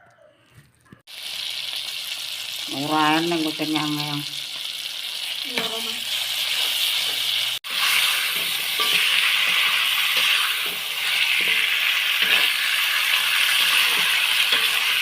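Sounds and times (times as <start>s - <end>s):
food sizzling in a pan: 1.1s - 15.0s
metal spatula scraping a pan: 5.5s - 15.0s.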